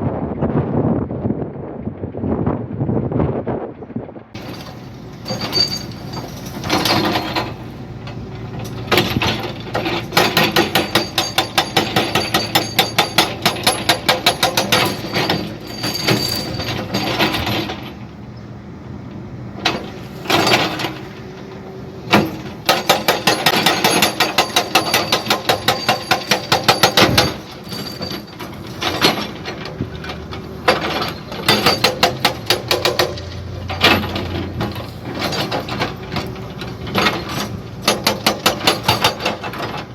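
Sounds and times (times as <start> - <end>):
jackhammer hammering: 4.4 - 7.8, 8.6 - 17.8, 22.1 - 29.6, 30.6 - 39.8.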